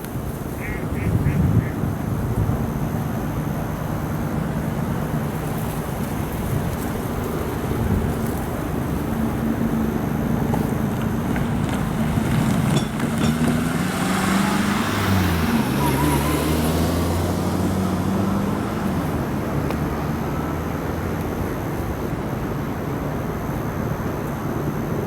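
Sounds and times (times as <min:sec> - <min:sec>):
low engine hum: 0:00.0 - 0:25.0
road traffic rumble: 0:00.0 - 0:25.0.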